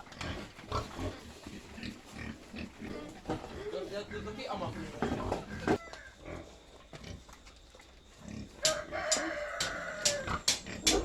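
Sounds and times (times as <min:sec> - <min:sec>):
rooster crowing: 0:05.6 - 0:06.2, 0:08.6 - 0:11.0.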